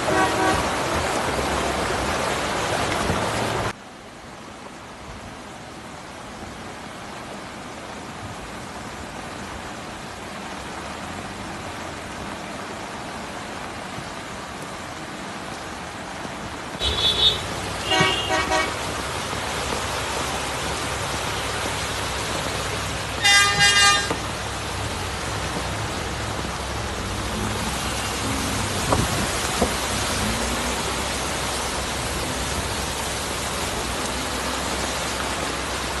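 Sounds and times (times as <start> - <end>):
vehicle horn blasts: 0.0 - 0.9, 16.8 - 18.8, 23.2 - 24.3
heavy rain hissing: 0.0 - 3.8, 5.7 - 36.0.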